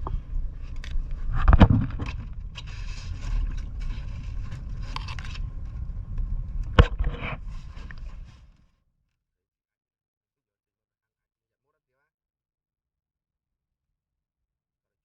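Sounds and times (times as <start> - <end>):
scraping: 0.0 - 8.6
steady low rumble: 0.0 - 8.6.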